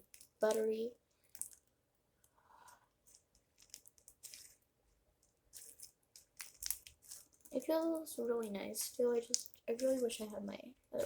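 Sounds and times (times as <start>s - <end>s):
slime crackling and popping: 0.0s - 1.7s, 3.2s - 4.6s, 5.4s - 10.4s.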